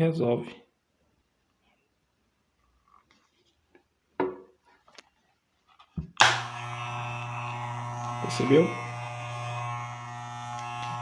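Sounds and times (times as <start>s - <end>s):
electric hair clipper humming: 6.2s - 11.0s.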